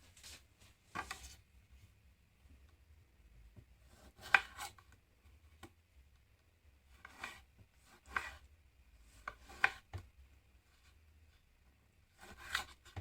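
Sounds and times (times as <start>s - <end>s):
knife cutting on chopping board: 3.9s - 4.8s, 6.9s - 8.4s, 9.2s - 10.0s, 12.2s - 13.0s.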